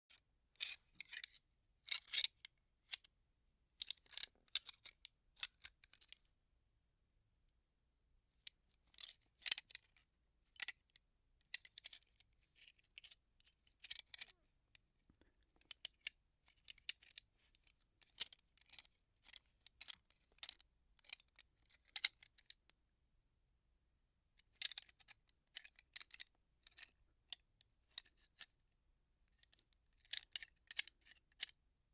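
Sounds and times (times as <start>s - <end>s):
gun parts clicking and rattling: 13.8s - 14.3s, 24.5s - 26.9s.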